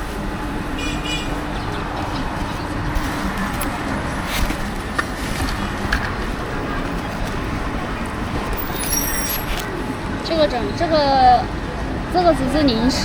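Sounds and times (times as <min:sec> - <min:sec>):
passing traffic: 0:00.0 - 0:13.0.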